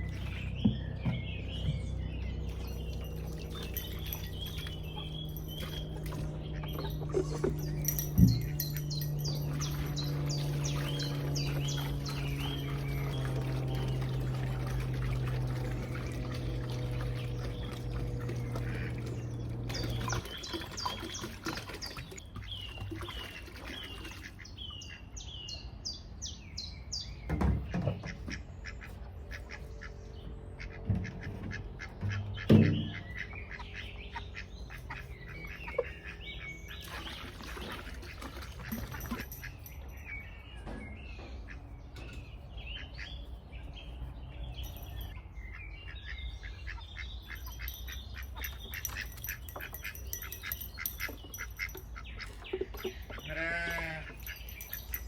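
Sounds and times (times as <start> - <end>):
low steady hum: 0.0 - 22.0
small birds chirping: 0.0 - 55.0
ducks quacking: 13.2 - 20.3, 30.6 - 37.0.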